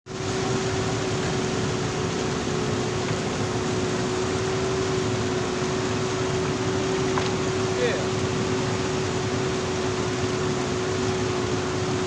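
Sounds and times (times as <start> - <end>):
diesel engine droning: 0.1 - 12.0.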